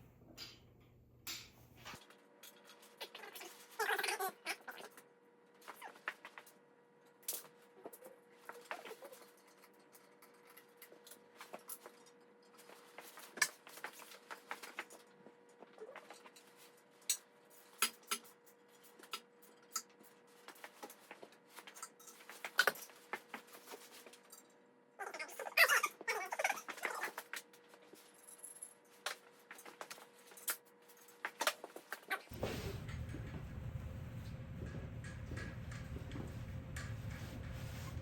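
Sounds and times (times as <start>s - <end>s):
faint steady hum: 32.3s - 38.0s.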